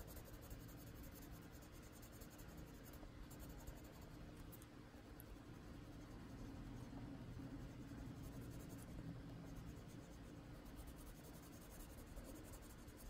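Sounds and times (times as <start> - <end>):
pencil scratching on paper: 0.0 - 4.2, 7.4 - 13.0.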